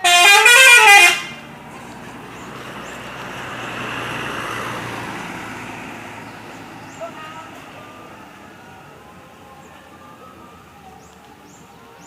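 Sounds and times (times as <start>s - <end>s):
bus musical horn melody: 0.0s - 1.7s
rushing vehicle noise: 0.0s - 12.0s.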